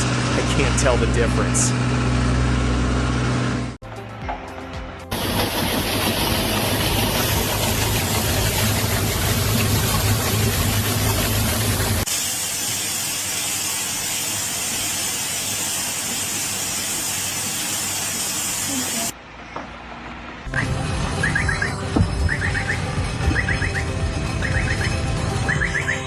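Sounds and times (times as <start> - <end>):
loud steady hissing: 12.0 - 19.2.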